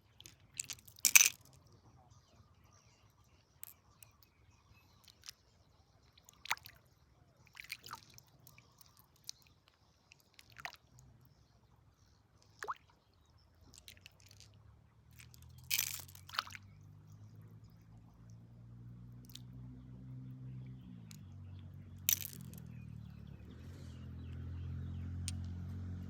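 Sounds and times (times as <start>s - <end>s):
wet squishing and sloshing: 6.1s - 6.9s, 7.5s - 11.0s, 13.7s - 16.7s
gravel and stones scraping by hand: 15.3s - 16.3s.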